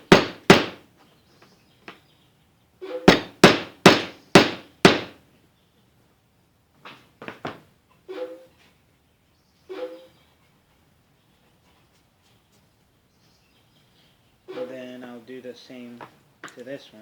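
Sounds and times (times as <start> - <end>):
hammer tapping nail into wood: 0.0 - 0.8, 3.1 - 5.2.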